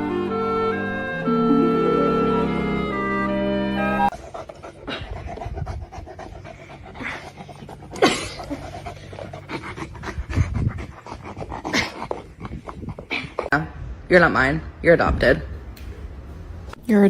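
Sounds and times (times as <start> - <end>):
dog panting: 4.1 - 13.6.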